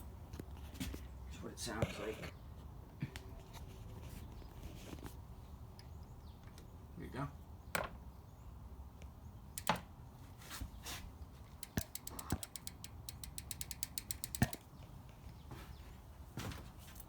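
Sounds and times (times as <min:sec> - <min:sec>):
bicycle hub ratcheting: 0:09.6 - 0:09.9, 0:11.6 - 0:14.7.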